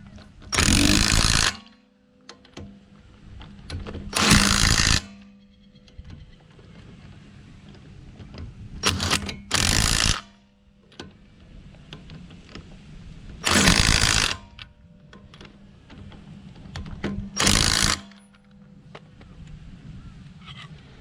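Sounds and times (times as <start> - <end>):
impact wrench hammering rattle: 0.5 - 1.8, 4.1 - 5.3, 8.8 - 10.4, 13.4 - 14.6, 17.0 - 18.4.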